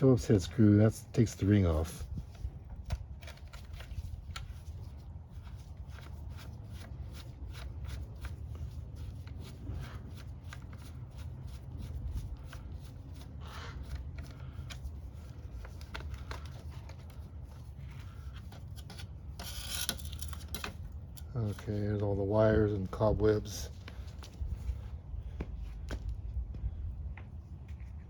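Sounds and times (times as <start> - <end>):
low steady hum: 0.0 - 28.0
screwdriver clicks and scrapes: 18.5 - 21.3.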